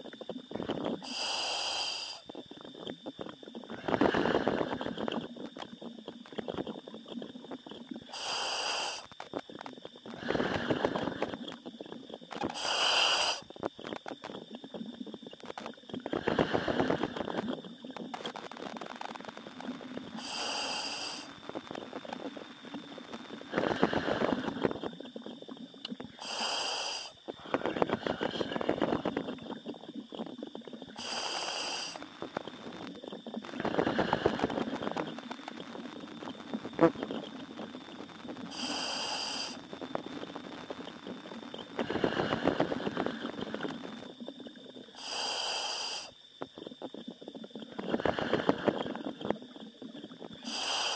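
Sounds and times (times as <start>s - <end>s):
diver breathing in helmet: 1.0s - 2.2s, 8.1s - 9.1s, 10.2s - 11.4s, 12.5s - 13.4s, 16.1s - 17.4s, 20.2s - 21.3s, 23.5s - 24.7s, 26.2s - 27.2s, 31.0s - 32.0s, 33.6s - 35.1s, 38.5s - 39.6s, 41.8s - 43.3s, 45.0s - 46.1s, 50.4s - 50.9s.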